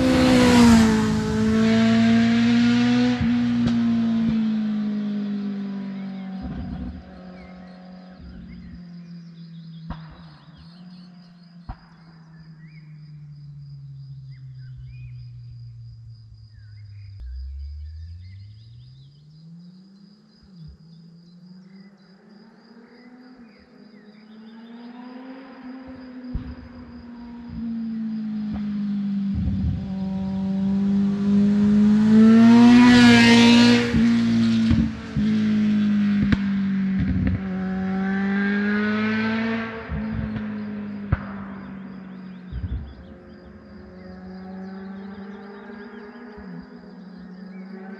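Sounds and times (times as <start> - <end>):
distant motorcycle engine: 0.0 - 22.1, 24.4 - 47.9
birds chirping: 0.0 - 25.3, 37.4 - 47.9
insect droning: 0.0 - 47.9.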